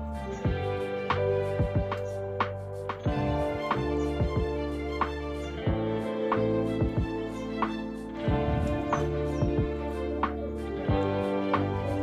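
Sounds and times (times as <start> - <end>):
soft instrumental music: 0.0 - 12.0.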